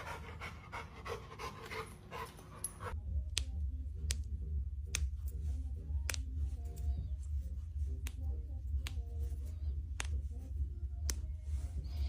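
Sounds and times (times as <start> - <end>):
fast rhythmic panting: 0.0 - 3.0
low steady hum: 0.0 - 12.0.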